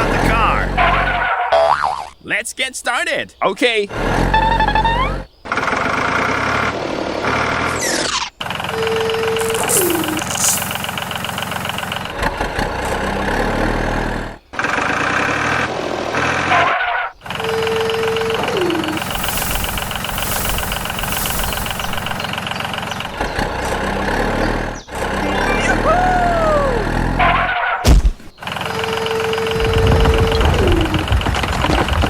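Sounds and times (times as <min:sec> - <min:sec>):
engine chugging: 0:00.0 - 0:01.4, 0:03.9 - 0:32.0
tone falling in pitch: 0:09.4 - 0:10.7.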